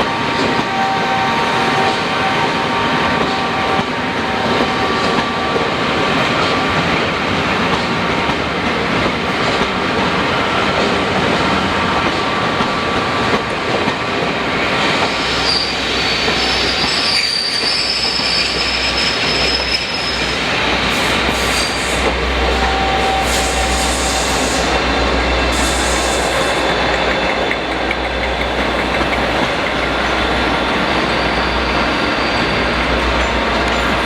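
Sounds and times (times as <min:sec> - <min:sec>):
train wheels rumbling: 0:00.0 - 0:34.0
high wheel squeal: 0:15.1 - 0:24.8, 0:30.5 - 0:34.0.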